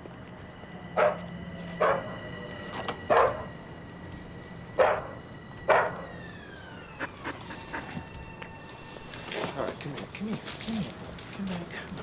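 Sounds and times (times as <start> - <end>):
dog barking: 1.0 - 2.2, 3.1 - 3.5, 4.8 - 6.2.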